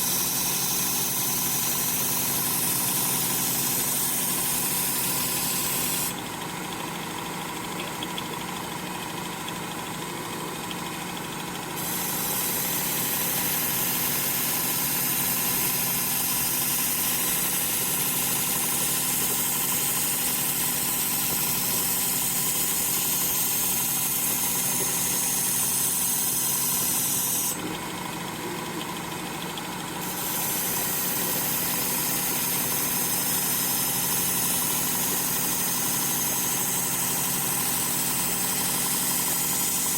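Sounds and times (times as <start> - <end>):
steel grinding on sander belt: 0.0 - 6.1, 11.8 - 27.6, 30.0 - 39.9
belt sander motor hum: 0.0 - 6.8, 10.3 - 39.9.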